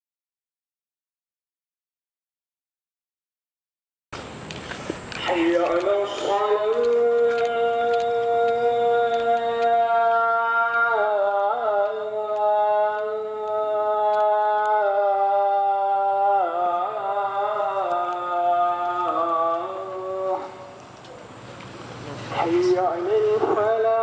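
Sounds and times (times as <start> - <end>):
person singing wordless melody: 5.1 - 21.1, 22.3 - 24.0.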